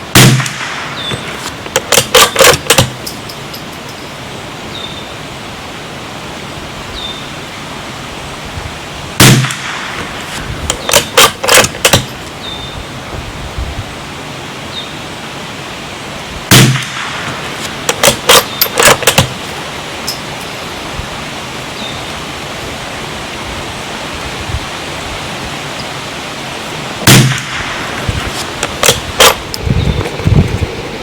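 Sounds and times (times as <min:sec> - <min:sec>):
rifle shots: 0:00.1 - 0:03.0, 0:09.2 - 0:12.2, 0:16.5 - 0:19.5, 0:27.0 - 0:29.5
wind rush: 0:08.2 - 0:10.9, 0:12.3 - 0:14.1, 0:19.4 - 0:31.0
rifle bolt clicking: 0:10.7 - 0:12.1, 0:17.6 - 0:19.4.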